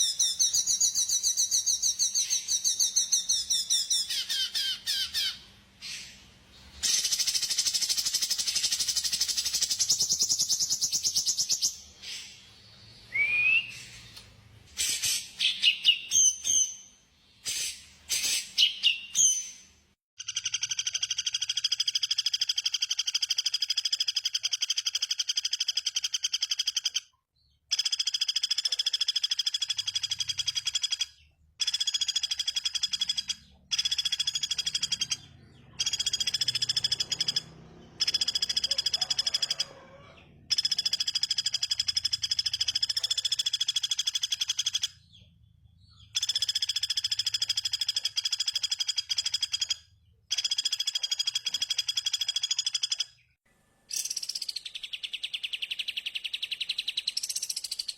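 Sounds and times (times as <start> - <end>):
songbird trilling and chirping: 0.0 - 6.1, 6.8 - 12.3, 27.7 - 53.2
bird rising whistle: 13.1 - 13.9.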